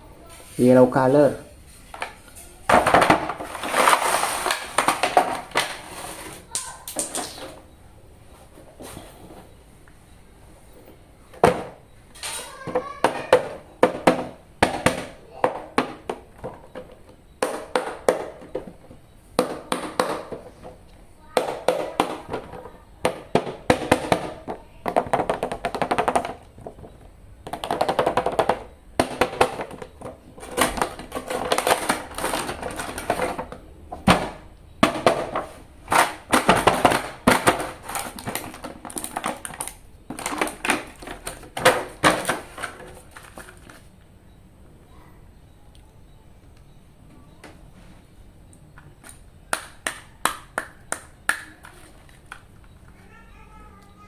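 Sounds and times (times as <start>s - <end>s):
plastic packaging crinkling: 3.4s - 5.8s, 36.4s - 43.9s.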